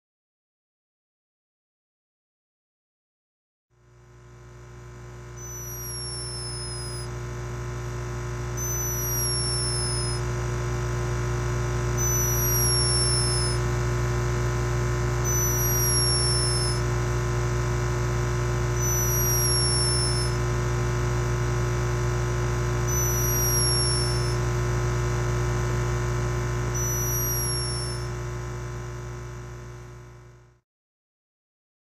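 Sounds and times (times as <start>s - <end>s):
low electrical hum: 3.8s - 30.6s
hummingbird snoring squeak: 5.4s - 7.1s, 8.6s - 10.2s, 12.0s - 13.6s, 15.2s - 16.8s, 18.8s - 20.4s, 22.9s - 24.4s, 26.8s - 28.1s.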